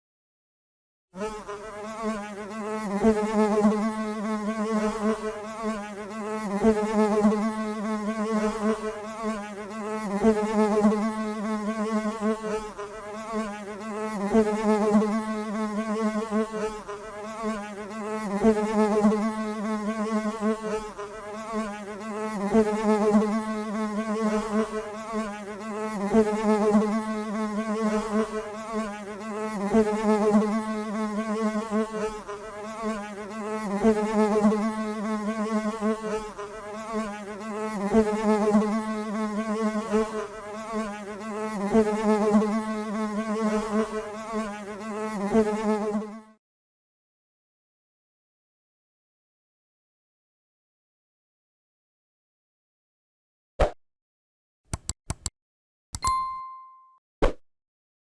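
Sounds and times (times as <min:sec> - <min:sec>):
bee buzzing: 0:01.2 - 0:46.4.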